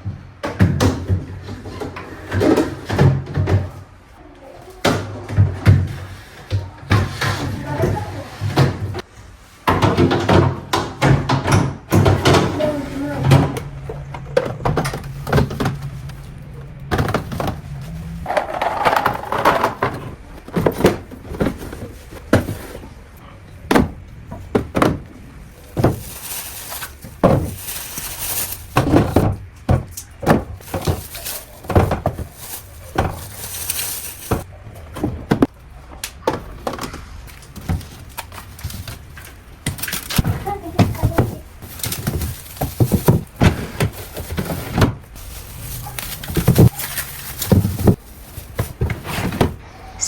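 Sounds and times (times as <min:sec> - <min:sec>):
objects knocking and clattering: 0:00.0 - 0:03.9, 0:04.8 - 0:49.6.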